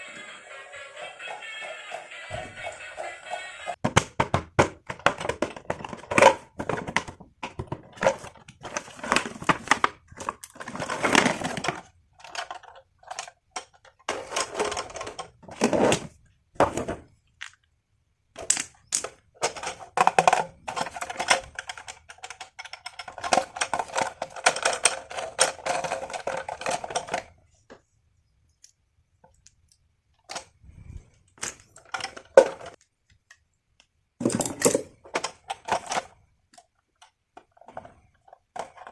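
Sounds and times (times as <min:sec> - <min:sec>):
toy packaging clicks and taps: 0:03.8 - 0:15.7, 0:17.4 - 0:17.7, 0:18.4 - 0:27.3.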